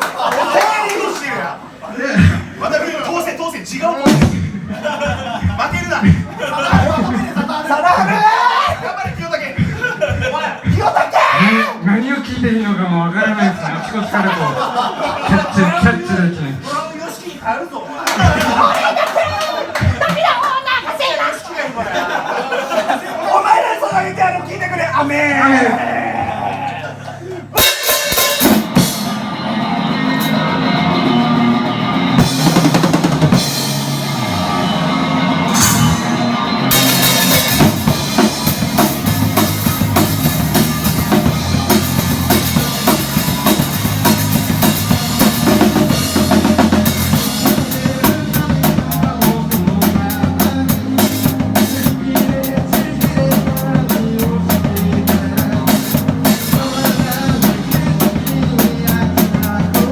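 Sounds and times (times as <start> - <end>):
live rock band: 4.0 - 5.4, 27.6 - 59.9.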